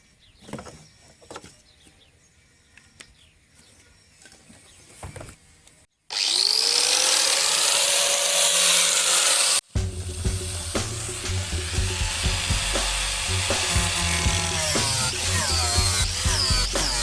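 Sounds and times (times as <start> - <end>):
electric drill spinning: 6.1 - 17.0.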